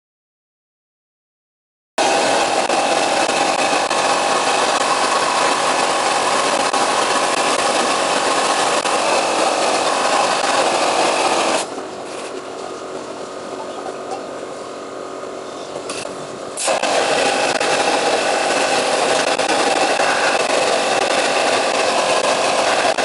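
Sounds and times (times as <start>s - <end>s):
machine steady noise: 2.0s - 23.0s
wet blaster hissing: 16.6s - 23.0s.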